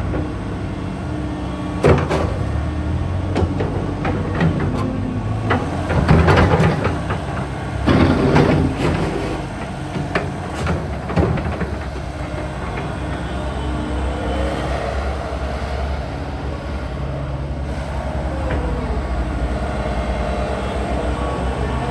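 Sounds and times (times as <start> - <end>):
excavator diesel engine: 0.0 - 21.9
metallic knocks and clanks: 3.2 - 12.1.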